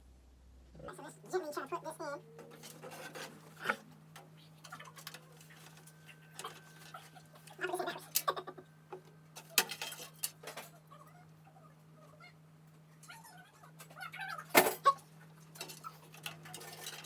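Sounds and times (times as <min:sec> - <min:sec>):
computer parts clicking and knocking: 0:08.9 - 0:10.6, 0:15.6 - 0:17.0.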